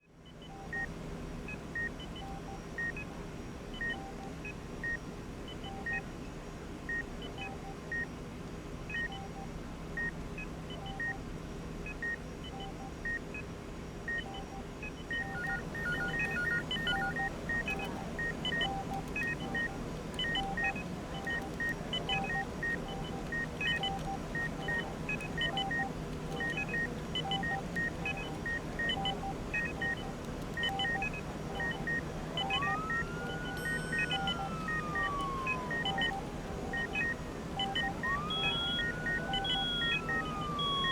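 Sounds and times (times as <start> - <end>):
low steady hum: 15.1 - 40.9
medical equipment beeping: 15.1 - 40.9.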